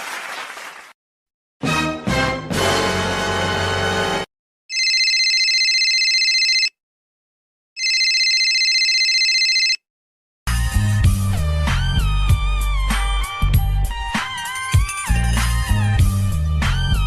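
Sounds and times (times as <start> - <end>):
telephone ringing: 4.7 - 6.8, 7.8 - 9.8.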